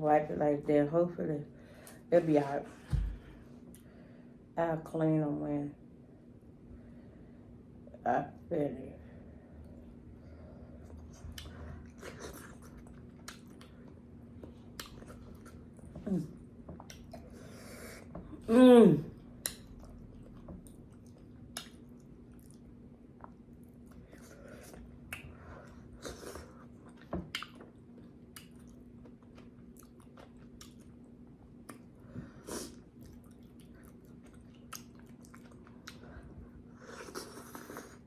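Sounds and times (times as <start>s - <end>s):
faint steady hum: 0.0s - 38.0s
chewing and mouth smacks: 10.9s - 16.1s, 16.7s - 17.4s, 19.4s - 32.0s, 32.6s - 38.0s.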